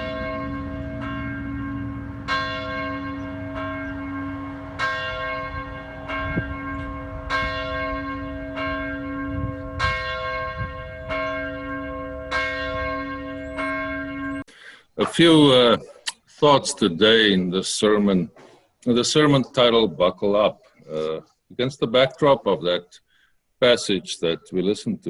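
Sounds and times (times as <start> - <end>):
church bell tolling: 0.0 - 14.5.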